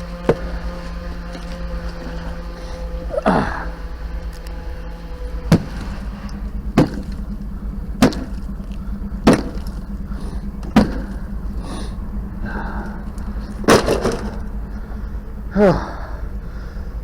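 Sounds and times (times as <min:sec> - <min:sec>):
steady low hum: 0:00.0 - 0:17.0
sharp knocks on metal box: 0:05.5 - 0:06.0, 0:06.8 - 0:07.4, 0:08.0 - 0:08.6, 0:09.2 - 0:11.2, 0:13.6 - 0:14.5.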